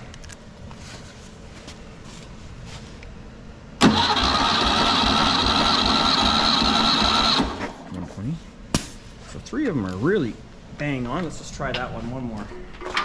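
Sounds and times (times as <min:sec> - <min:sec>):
starter motor cranking engine: 0:03.8 - 0:07.8.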